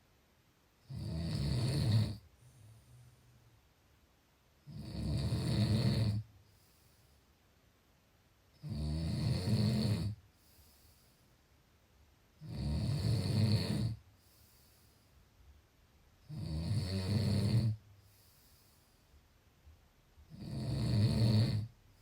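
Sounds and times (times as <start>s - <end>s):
quiet breathing: 0.8s - 4.0s, 4.6s - 22.0s
rattling snores: 0.9s - 2.3s, 4.7s - 6.3s, 8.6s - 10.2s, 12.4s - 14.0s, 16.3s - 17.8s, 20.3s - 21.8s.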